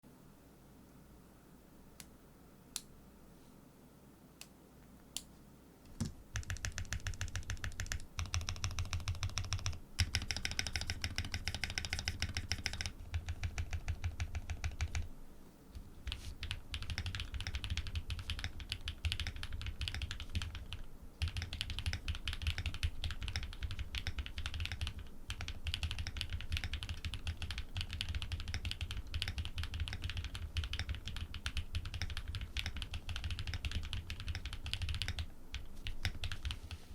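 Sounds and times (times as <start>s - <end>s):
mechanical keyboard typing: 6.4s - 15.1s, 16.0s - 36.6s.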